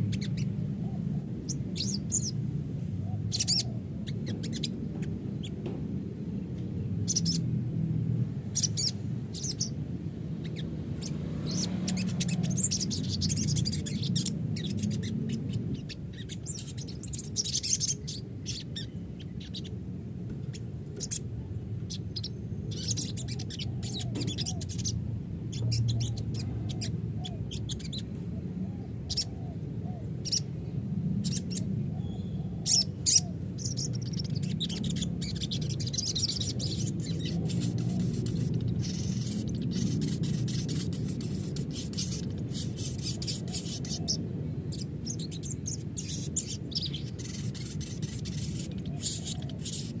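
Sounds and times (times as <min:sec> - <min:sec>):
steady low hum: 0:00.0 - 0:50.0
bird chattering calls: 0:03.0 - 0:05.6, 0:10.4 - 0:19.7, 0:32.4 - 0:50.0.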